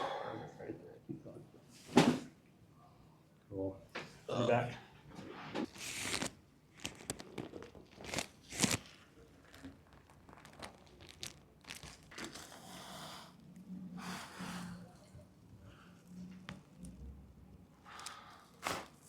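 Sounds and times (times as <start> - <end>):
rustling handling noise: 5.6 - 12.4.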